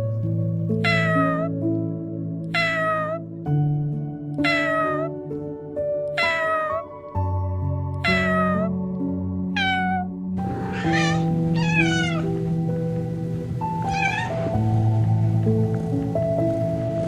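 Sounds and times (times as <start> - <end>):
soft background music: 0.0 - 17.0
animal calls sliding down: 9.6 - 12.4, 13.8 - 14.6.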